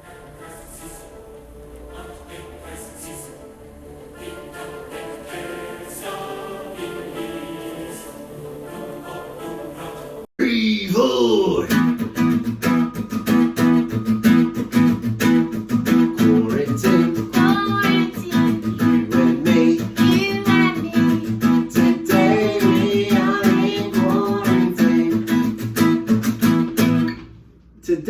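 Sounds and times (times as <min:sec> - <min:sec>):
person singing: 0:04.2 - 0:12.1, 0:16.1 - 0:25.7
acoustic guitar strumming: 0:11.6 - 0:27.3.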